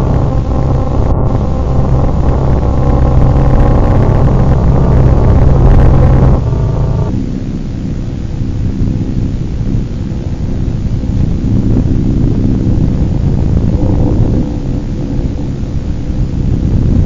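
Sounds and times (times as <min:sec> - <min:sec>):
dense low droning rumble: 0:00.0 - 0:17.0.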